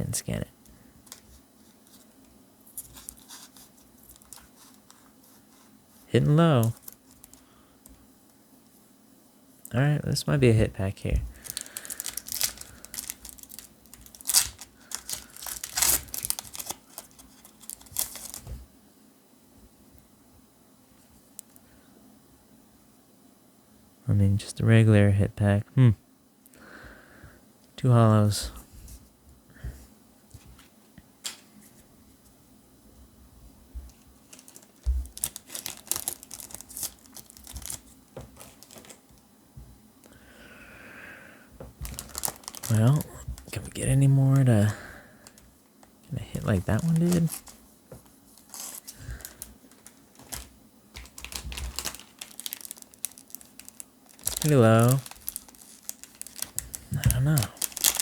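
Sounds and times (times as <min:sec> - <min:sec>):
foil wrapper crinkling and tearing: 0:02.8 - 0:05.1, 0:06.6 - 0:07.5, 0:11.3 - 0:18.6, 0:34.2 - 0:39.0, 0:41.8 - 0:45.5, 0:46.4 - 0:47.6, 0:48.3 - 0:58.0.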